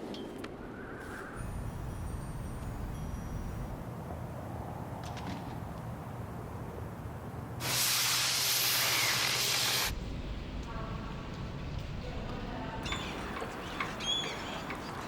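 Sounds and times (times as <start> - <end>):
loud even hiss: 7.6 - 9.9.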